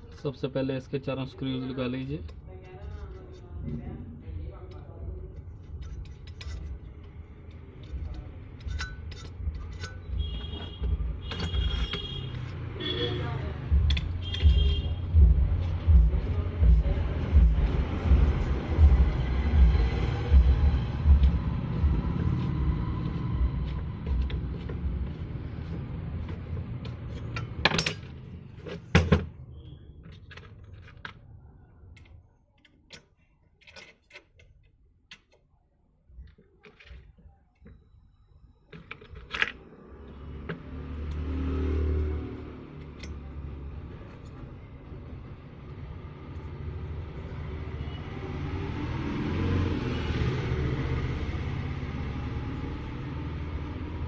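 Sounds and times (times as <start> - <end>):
metal clicks and clinks: 5.6 - 10.2, 26.8 - 29.2, 42.8 - 43.4
low rumble: 15.0 - 23.6.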